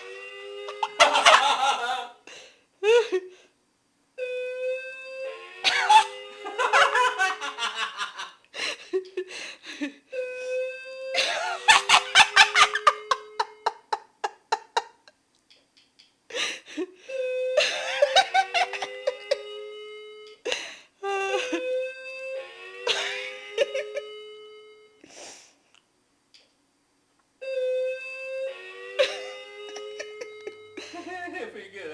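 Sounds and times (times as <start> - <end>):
people laughing: 0.8 - 2.2, 5.7 - 9.3, 11.2 - 15.1, 17.6 - 19.4
doorbell chime sagging in pitch: 22.0 - 25.0, 27.4 - 31.0.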